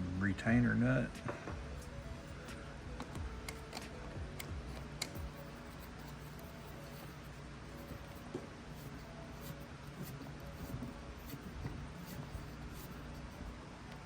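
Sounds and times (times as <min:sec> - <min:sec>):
steady low hum: 0:00.0 - 0:14.0
small tool clicks and scratching: 0:03.0 - 0:13.5.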